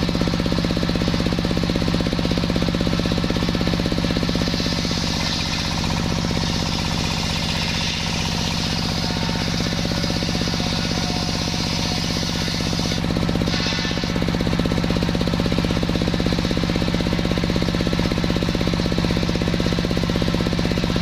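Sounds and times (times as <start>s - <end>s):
pulsing engine drone: 0.0s - 21.0s
saw blade rasping through log: 4.2s - 16.7s.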